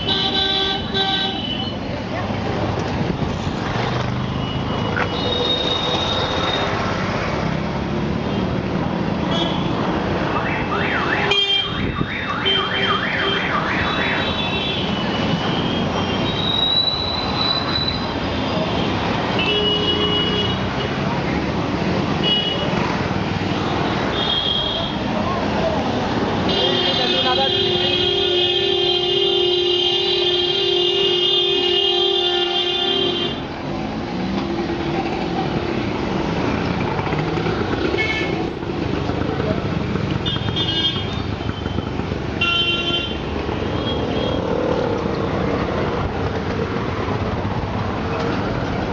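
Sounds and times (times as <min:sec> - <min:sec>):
street traffic: 0:00.0 - 0:48.9
emergency siren sweeping: 0:10.3 - 0:14.4
car horn beeps: 0:10.4 - 0:16.6, 0:42.4 - 0:44.4
vehicle running: 0:33.6 - 0:42.4.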